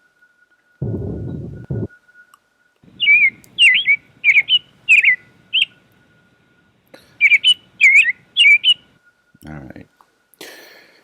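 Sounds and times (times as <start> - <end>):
quick high bird chirps: 7.2 - 8.9.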